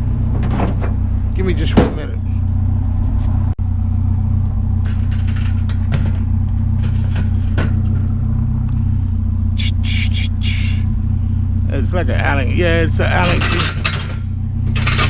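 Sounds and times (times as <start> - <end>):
vehicle engine idling: 0.0 - 15.0
scrap metal knocking and clanking: 0.2 - 2.4, 4.8 - 8.3, 12.9 - 15.0
rasping scrape: 4.8 - 8.2, 13.2 - 15.0.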